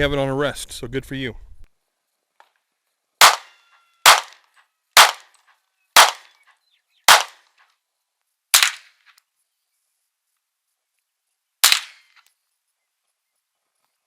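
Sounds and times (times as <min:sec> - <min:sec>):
rifle shots: 0:03.2 - 0:04.4, 0:05.0 - 0:05.3, 0:06.0 - 0:06.3, 0:07.1 - 0:07.5, 0:08.6 - 0:08.9, 0:11.6 - 0:12.2.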